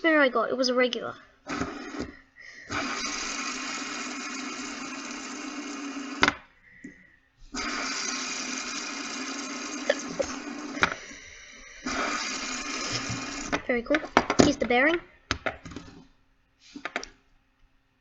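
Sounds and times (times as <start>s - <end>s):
fidget spinner whirring: 1.4s - 6.5s, 7.5s - 15.1s.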